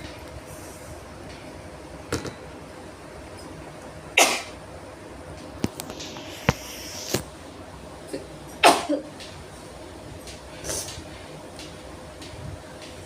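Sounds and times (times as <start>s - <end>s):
person sneezing: 4.2s - 4.6s, 8.1s - 9.1s
short hiss: 5.9s - 7.2s.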